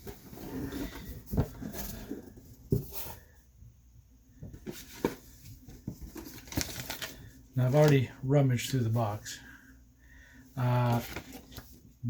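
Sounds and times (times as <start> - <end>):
cardboard box rustling: 0.0 - 3.2, 4.4 - 8.0.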